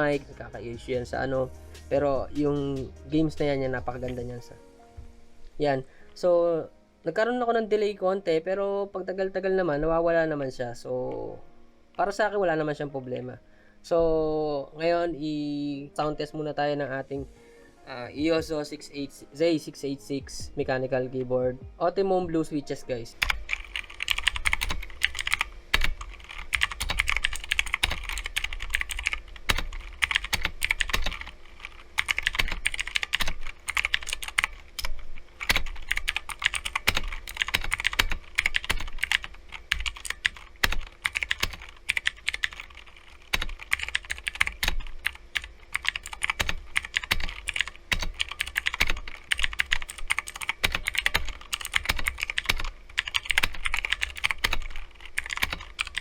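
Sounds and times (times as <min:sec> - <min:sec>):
typing on mechanical keyboard: 0:23.2 - 0:56.0.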